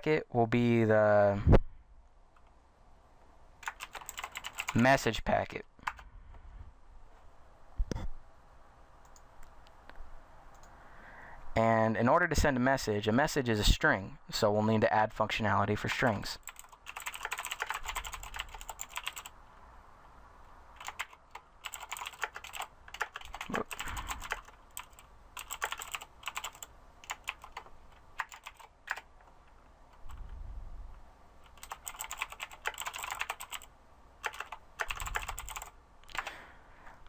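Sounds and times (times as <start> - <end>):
computer keyboard typing: 3.6 - 4.8, 5.8 - 6.0, 16.4 - 19.4, 20.8 - 30.2, 31.4 - 36.4.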